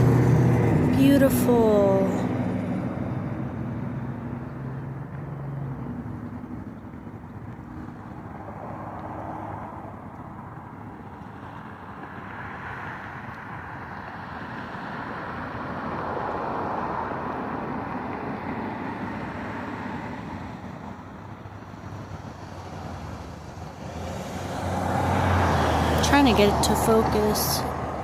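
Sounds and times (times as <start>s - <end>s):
passing cars hissing: 18.5s - 28.0s.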